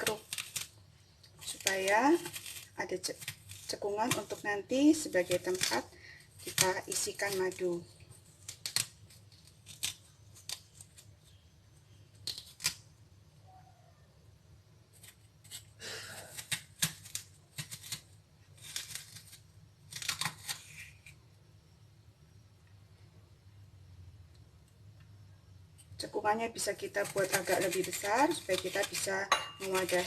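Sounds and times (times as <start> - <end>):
utensil scraping pear core: 0.0 - 12.9, 14.9 - 21.3, 25.8 - 30.0.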